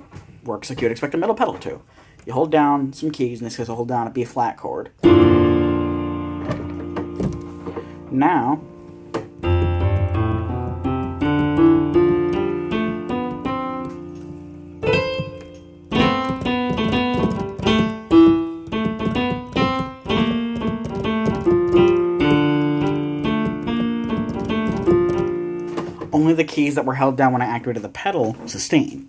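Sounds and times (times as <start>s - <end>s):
held piano chord: 5.0s - 26.4s
short piano notes: 5.0s - 26.5s.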